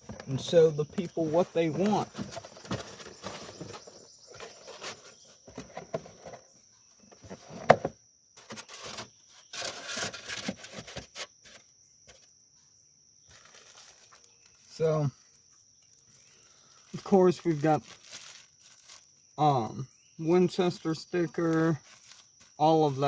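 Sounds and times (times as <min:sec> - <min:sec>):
cardboard rustling: 0:00.0 - 0:06.5, 0:07.1 - 0:12.3, 0:16.0 - 0:19.2
high insect drone: 0:00.0 - 0:23.0
cardboard box being opened: 0:01.4 - 0:06.5, 0:07.2 - 0:11.6.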